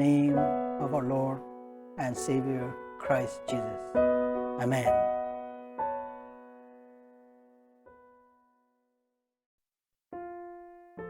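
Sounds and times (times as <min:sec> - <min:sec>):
quiet keyboard chords: 0:00.0 - 0:06.3.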